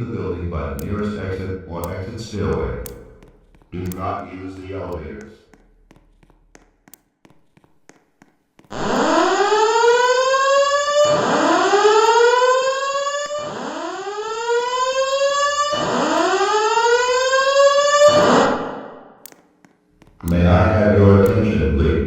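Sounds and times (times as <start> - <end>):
fire alarm whooping tone: 8.8 - 18.8.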